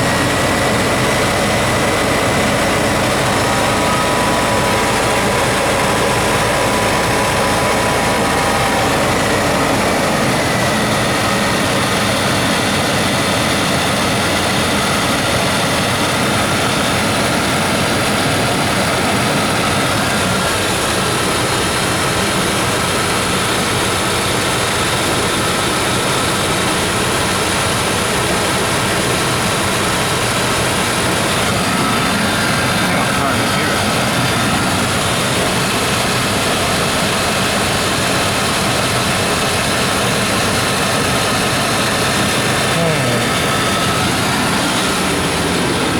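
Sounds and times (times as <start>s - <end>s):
car engine idling: 0.0s - 45.9s.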